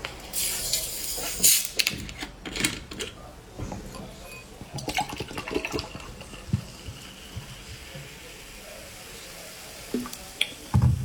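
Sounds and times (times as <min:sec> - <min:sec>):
hiss of liquid: 0:00.3 - 0:01.7
person gulping juice: 0:04.7 - 0:07.6.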